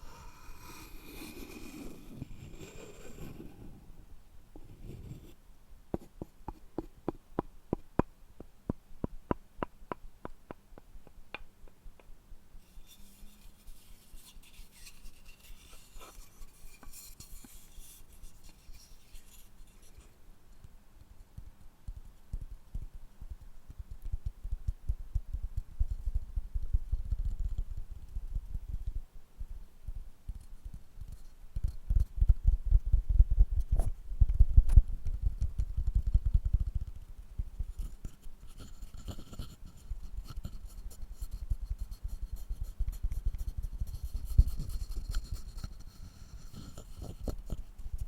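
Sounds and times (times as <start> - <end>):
scraping and rubbing on wood: 12.7 - 19.9.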